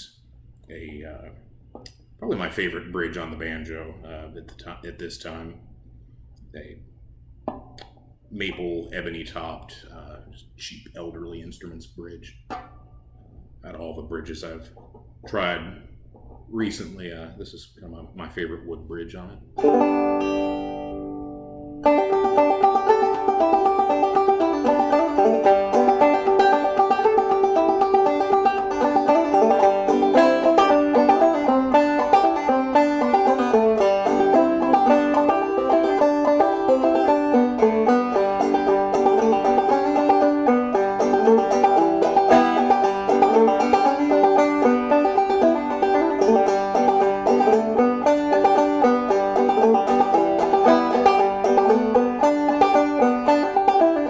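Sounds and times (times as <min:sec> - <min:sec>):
banjo tune of plucked notes: 0:02.2 - 0:03.3, 0:19.6 - 0:54.0.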